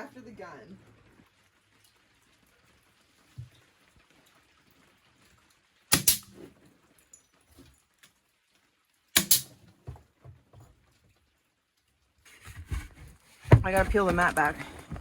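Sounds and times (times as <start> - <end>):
nail gun firing: 5.9 - 6.3, 9.2 - 9.5.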